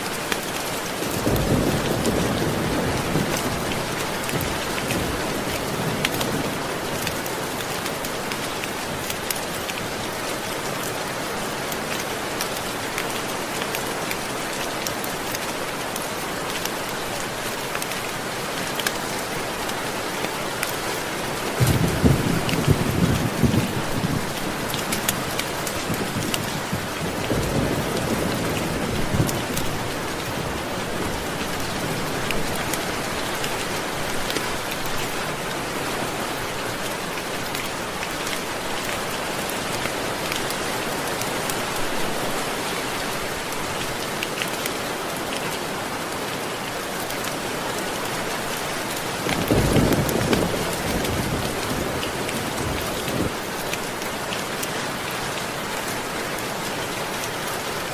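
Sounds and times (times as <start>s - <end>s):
rain pattering: 0.0s - 57.9s
thunder rumbling: 21.6s - 24.4s, 49.4s - 53.3s.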